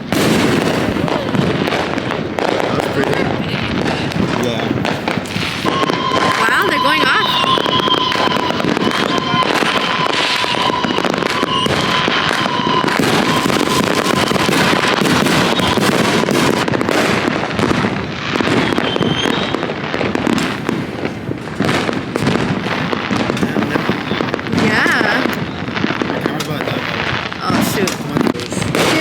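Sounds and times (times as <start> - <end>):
fireworks crackling and banging: 0.0 - 29.0
steady high tone: 5.7 - 16.3.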